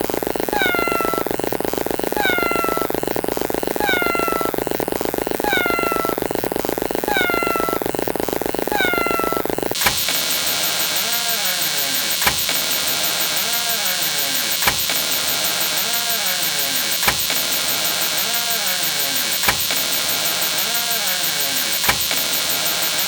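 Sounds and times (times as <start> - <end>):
creaking door hinge: 9.8 - 23.0.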